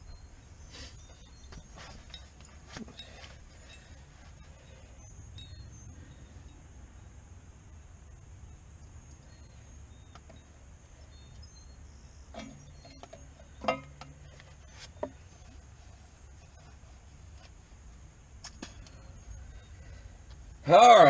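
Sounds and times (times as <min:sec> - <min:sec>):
faint low hum: 0:00.0 - 0:20.7
metallic knocks and clinks: 0:12.3 - 0:14.3.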